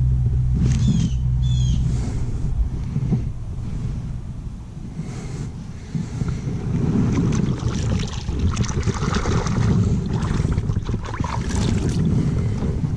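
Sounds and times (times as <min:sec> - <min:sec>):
wind buffeting microphone: 0:00.0 - 0:12.9
water splashing against kayak: 0:05.9 - 0:12.9.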